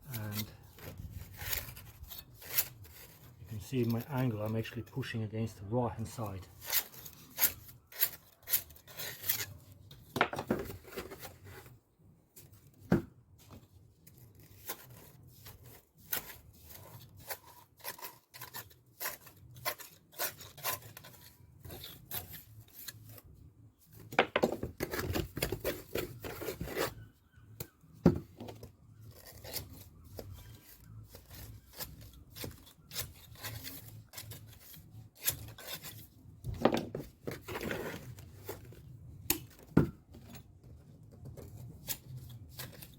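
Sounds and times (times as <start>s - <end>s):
trowel scraping mortar: 0.0s - 4.9s, 6.2s - 9.8s, 14.1s - 23.3s, 24.8s - 27.1s, 28.5s - 36.2s.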